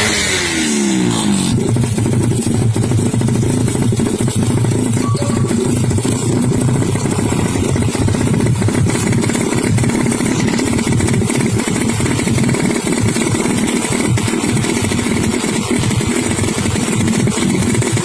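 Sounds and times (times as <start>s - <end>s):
motorcycle engine running: 0.0s - 18.0s.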